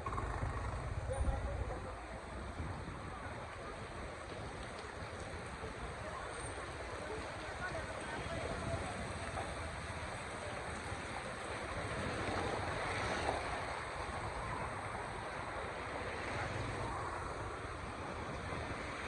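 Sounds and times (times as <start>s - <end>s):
rain: 0.0s - 19.0s
road traffic on wet streets: 0.0s - 19.0s.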